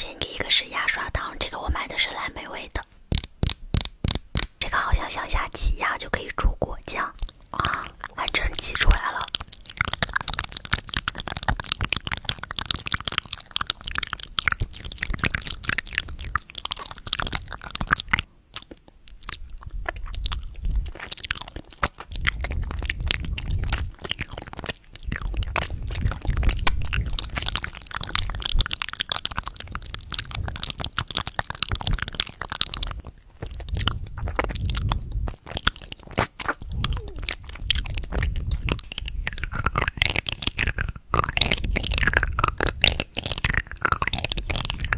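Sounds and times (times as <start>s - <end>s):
candy crunching: 0.0s - 44.9s
wet chewing clicks: 0.0s - 44.9s
low mouth thuds: 2.9s - 5.0s, 25.6s - 28.4s, 36.2s - 44.9s.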